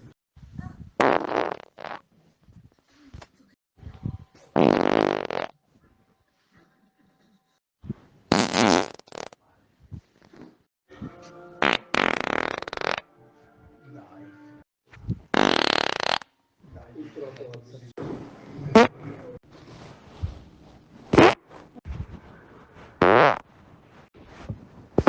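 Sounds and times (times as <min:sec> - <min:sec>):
human farts: 0:01.0 - 0:02.1, 0:04.5 - 0:05.6, 0:08.3 - 0:09.4, 0:11.6 - 0:13.1, 0:15.3 - 0:16.3, 0:18.7 - 0:19.0, 0:21.1 - 0:21.4, 0:23.0 - 0:23.5.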